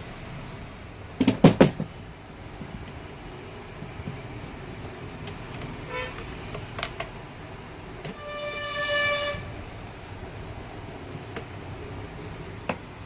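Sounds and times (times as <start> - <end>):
horn-like pitched tone: 5.9 - 6.2, 8.1 - 9.6.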